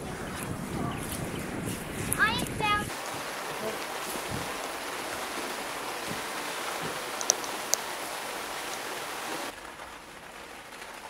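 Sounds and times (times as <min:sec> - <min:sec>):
steady rushing outdoor hiss: 0:00.0 - 0:11.0
sharp clicks: 0:07.2 - 0:07.8.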